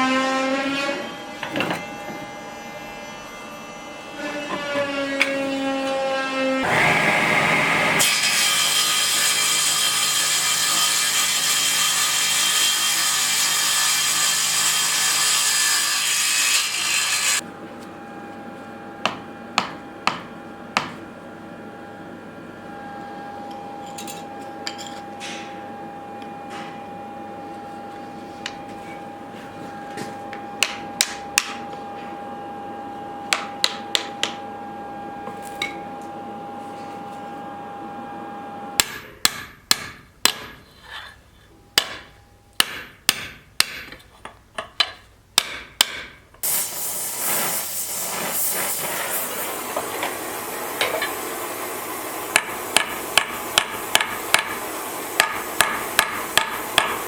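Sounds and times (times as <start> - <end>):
steady hum: 17.4 - 40.1
hammer striking steel on anvil: 19.0 - 21.0, 30.6 - 31.7, 38.8 - 40.6, 41.7 - 44.0, 44.8 - 46.2, 55.2 - 57.0.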